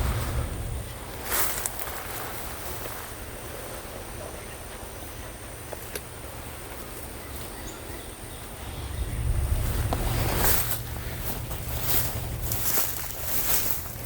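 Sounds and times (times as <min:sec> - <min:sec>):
low rumble on microphone: 0:00.0 - 0:04.6, 0:07.7 - 0:14.0.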